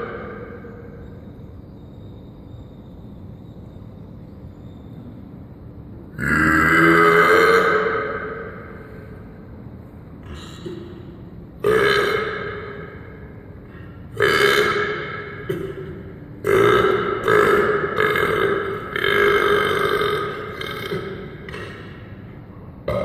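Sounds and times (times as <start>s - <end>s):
person burping loudly: 6.1s - 8.3s, 11.6s - 13.0s, 13.6s - 22.0s.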